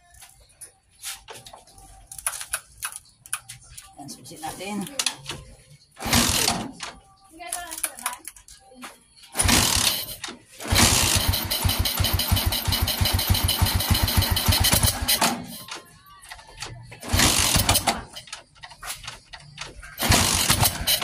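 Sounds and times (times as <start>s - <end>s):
motorcycle engine cranking: 6.0s - 7.0s, 9.4s - 21.0s.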